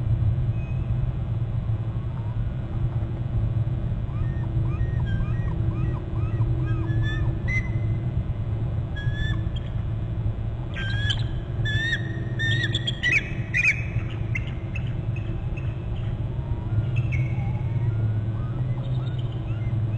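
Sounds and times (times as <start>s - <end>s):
steady low rumble: 0.0s - 19.9s
eagle chirping calls: 4.2s - 8.0s, 9.0s - 9.7s, 10.8s - 16.1s, 16.7s - 19.9s.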